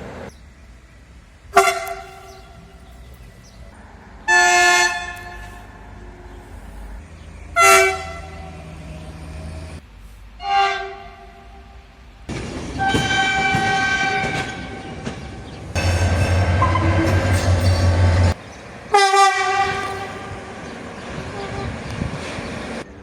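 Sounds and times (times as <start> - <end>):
rumble of passing train: 0.0 - 23.0
train horn blasts: 1.5 - 2.8, 4.3 - 6.4, 7.6 - 8.8, 10.4 - 11.8, 12.8 - 14.9, 15.8 - 22.2.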